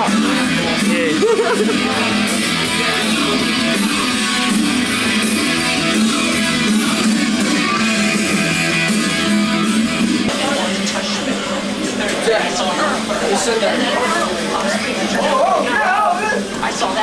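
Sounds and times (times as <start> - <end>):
strummed guitar music: 0.0 - 13.2.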